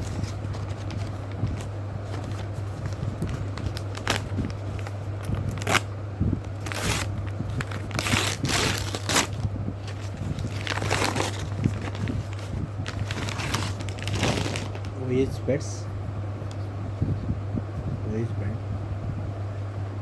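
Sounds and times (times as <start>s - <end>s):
packaging crinkling and tearing: 0.0s - 15.0s
steady low hum: 0.0s - 20.0s.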